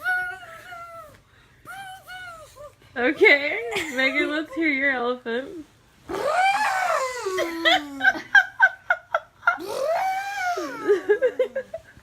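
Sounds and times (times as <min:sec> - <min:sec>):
person giggling: 0:03.6 - 0:04.5, 0:07.0 - 0:12.0.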